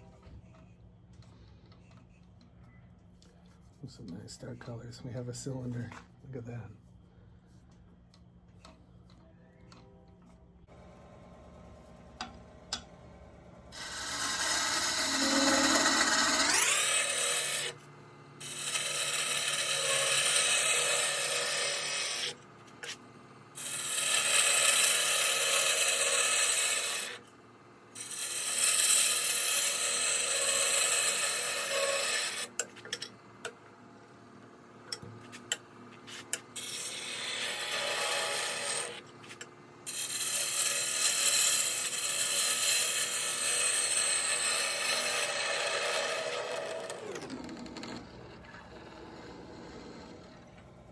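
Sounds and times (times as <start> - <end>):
wood lathe spinning: 10.7 - 50.9
turning tool scraping wood: 13.7 - 27.2, 28.0 - 33.6, 34.9 - 50.9.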